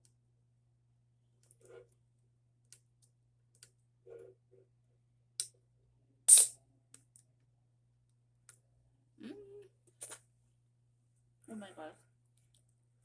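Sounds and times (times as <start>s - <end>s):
closed-mouth hums: 9.2s - 10.2s.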